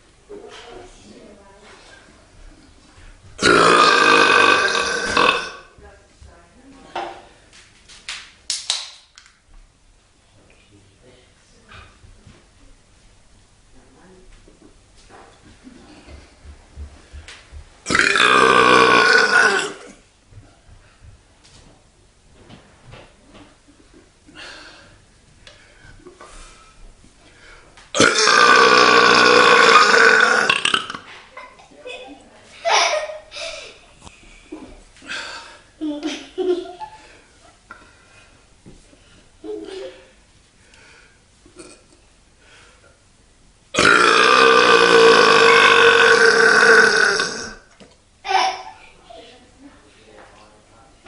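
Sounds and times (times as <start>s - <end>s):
long loud belch: 3.4s - 5.7s, 17.9s - 20.0s, 28.0s - 31.1s, 41.6s - 41.9s, 43.7s - 47.7s.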